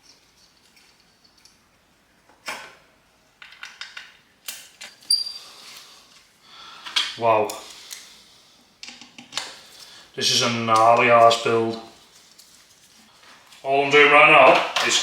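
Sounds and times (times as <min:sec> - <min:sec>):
metal bike parts and tools handled: 0:00.0 - 0:01.8, 0:03.4 - 0:05.8.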